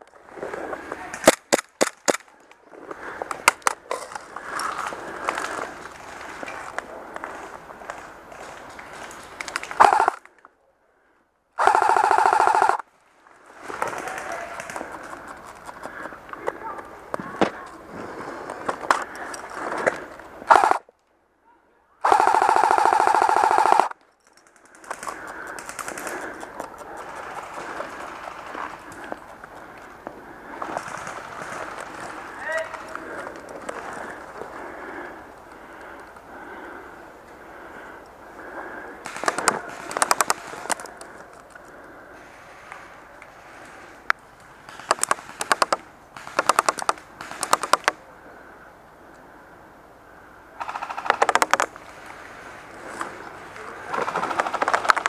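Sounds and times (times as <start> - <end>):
small clicks and pops: 7.8 - 10.5, 44.1 - 48.0
airsoft gun full-auto burst: 9.8 - 10.2, 11.6 - 12.8, 20.5 - 20.8, 22.0 - 23.9, 50.6 - 51.6.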